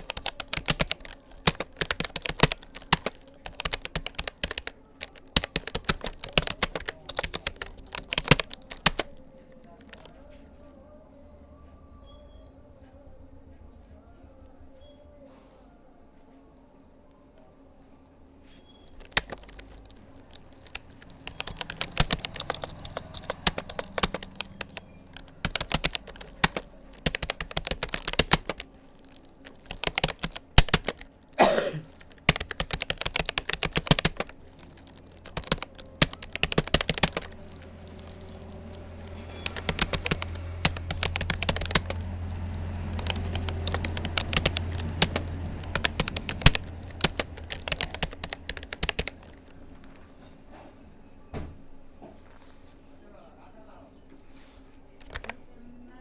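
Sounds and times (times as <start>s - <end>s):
keyboard key clicks: 0.0s - 9.2s, 19.0s - 31.1s, 31.9s - 42.1s, 42.9s - 49.6s, 55.0s - 55.4s.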